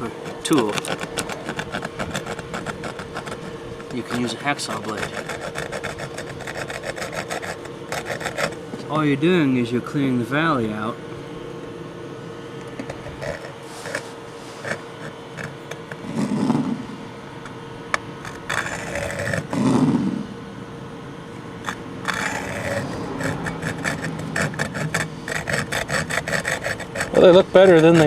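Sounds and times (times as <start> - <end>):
hacksaw scraping metal threads: 0.0 - 8.6, 12.6 - 16.1, 18.2 - 19.6, 21.6 - 28.0.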